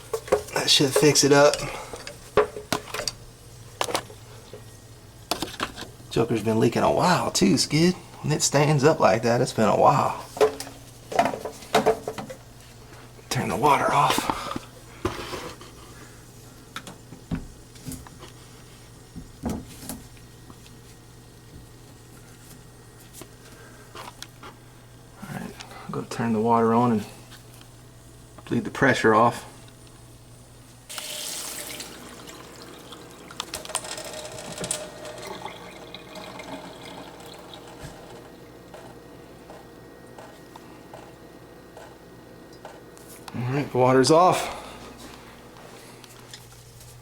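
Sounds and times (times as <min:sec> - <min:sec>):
steady low hum: 0:00.0 - 0:47.0
water running from tap: 0:30.9 - 0:38.3.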